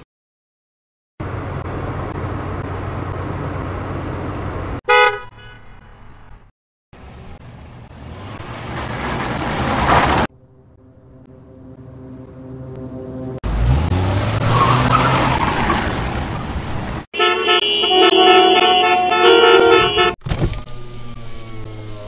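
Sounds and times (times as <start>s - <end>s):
car approaching: 1.2s - 4.8s, 5.8s - 17.1s
car horn toot: 4.8s - 5.8s, 17.1s - 20.2s.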